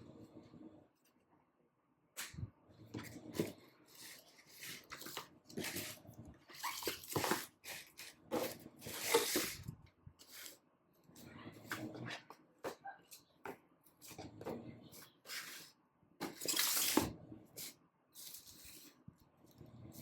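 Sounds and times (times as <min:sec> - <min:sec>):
packaging rustling: 0:04.1 - 0:09.6.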